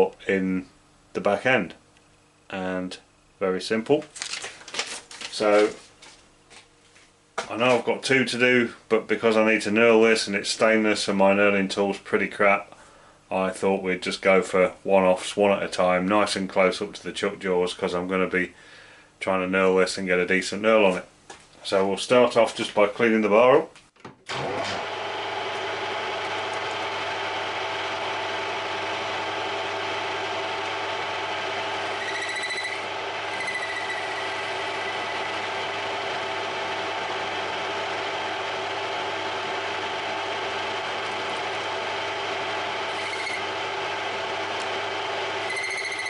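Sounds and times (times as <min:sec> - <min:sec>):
metal lathe running: 0:24.3 - 0:46.0
high squeal of cutting: 0:32.0 - 0:35.0, 0:42.9 - 0:43.5, 0:45.4 - 0:46.0.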